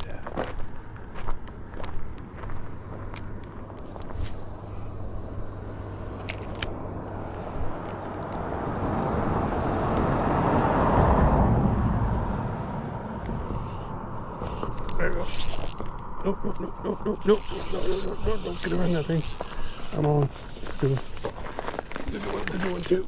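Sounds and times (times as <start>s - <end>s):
vehicle passing by: 7.0s - 16.2s.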